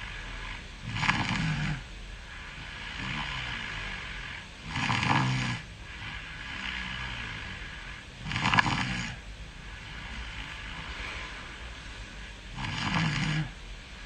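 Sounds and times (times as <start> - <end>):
soft breaths: 8.8 - 13.0.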